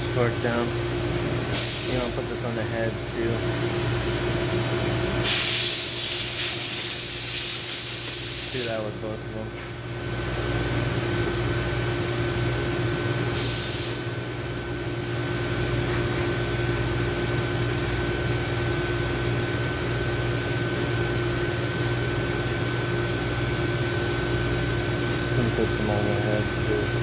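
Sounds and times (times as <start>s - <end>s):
shop equipment humming: 0.0s - 27.0s
short spray-like hiss: 1.6s - 2.0s, 5.2s - 8.7s, 13.4s - 14.0s.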